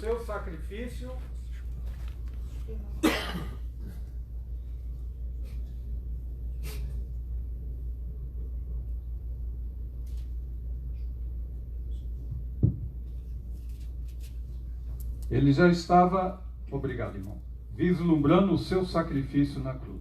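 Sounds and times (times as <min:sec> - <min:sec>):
low electrical hum: 0:00.0 - 0:20.0.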